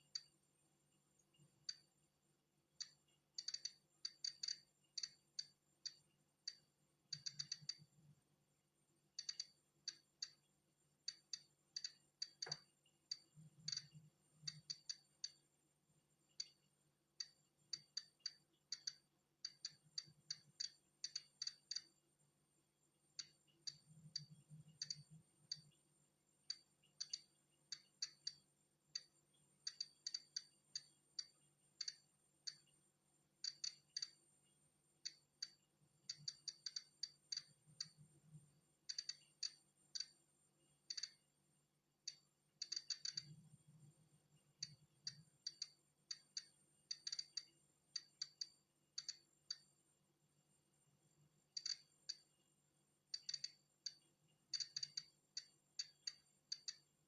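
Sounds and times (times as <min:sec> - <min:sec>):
geiger counter clicking: 0:00.0 - 0:00.4, 0:02.8 - 0:08.0, 0:09.2 - 0:15.4, 0:16.3 - 0:22.0, 0:23.2 - 0:25.8, 0:26.5 - 0:32.7, 0:33.4 - 0:34.2, 0:35.0 - 0:40.2, 0:40.8 - 0:41.2, 0:42.0 - 0:43.5, 0:44.6 - 0:49.7, 0:51.5 - 0:52.3, 0:53.1 - 0:56.9.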